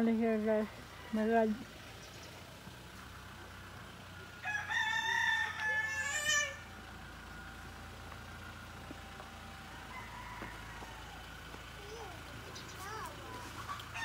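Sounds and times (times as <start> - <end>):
rooster crowing: 4.4 - 6.8, 9.6 - 11.5, 13.7 - 14.0.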